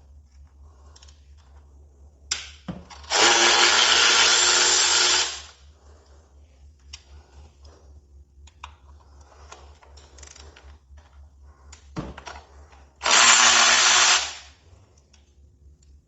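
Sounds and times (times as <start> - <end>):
drill clicks: 3.0 - 5.5, 13.0 - 14.5
power drill running: 3.0 - 5.6, 13.0 - 14.6.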